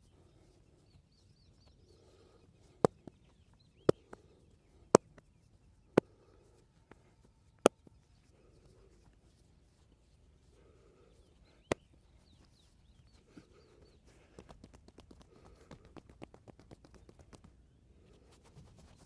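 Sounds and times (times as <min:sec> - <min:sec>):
hands slapping and tapping body: 0:02.8 - 0:05.3, 0:14.1 - 0:17.6.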